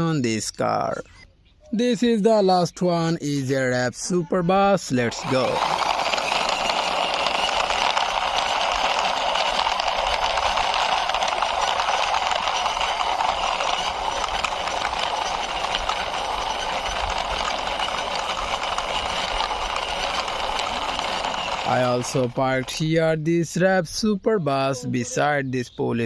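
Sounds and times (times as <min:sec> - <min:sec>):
toy bus wheels rattling: 0:04.9 - 0:23.2.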